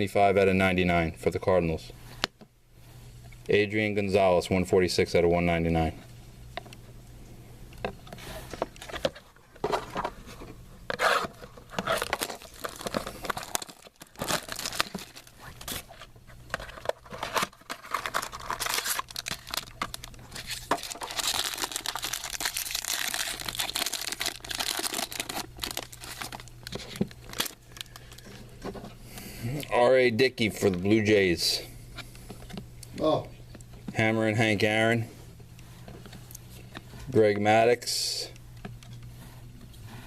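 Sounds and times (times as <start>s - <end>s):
steady low hum: 0.0s - 40.0s
wrappers tearing and crinkling: 10.9s - 28.4s.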